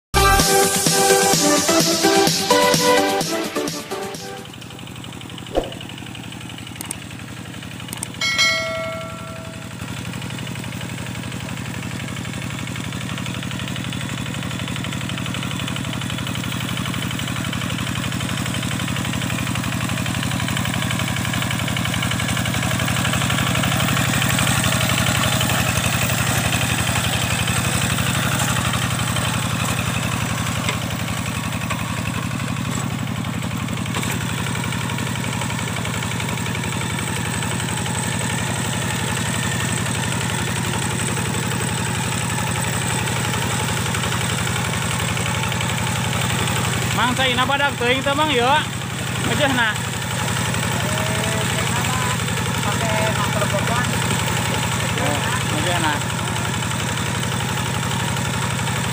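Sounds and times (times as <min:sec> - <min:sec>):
tractor engine running under load: 0:00.2 - 0:58.9
short ringing tone: 0:08.2 - 0:10.2.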